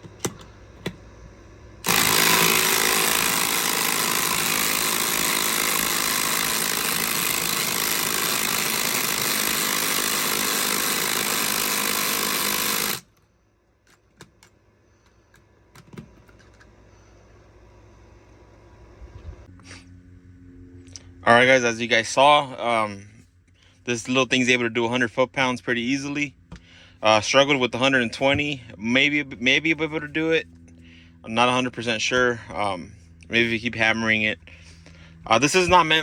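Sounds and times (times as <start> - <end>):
impact driver hammering: 1.8 - 13.1.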